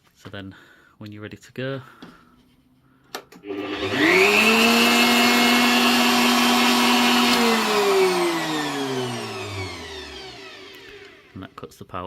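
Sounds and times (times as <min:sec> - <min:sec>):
router motor whining: 0:03.4 - 0:11.6.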